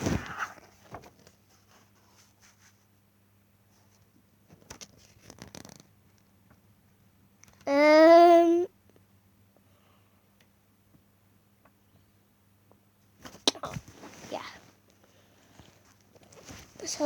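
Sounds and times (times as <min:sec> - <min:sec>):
soft clicks and rustles: 0:03.7 - 0:07.7, 0:12.7 - 0:17.0.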